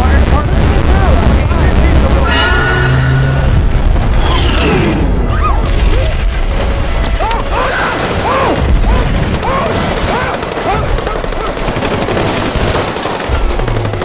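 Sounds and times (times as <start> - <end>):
low rumbling with booms: 0.0 - 10.1
short rising and falling cries: 2.2 - 5.2.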